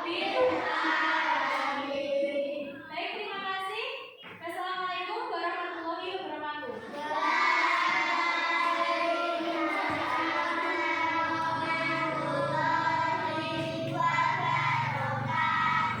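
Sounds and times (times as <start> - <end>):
children singing together: 0.0 - 2.9, 6.8 - 16.0.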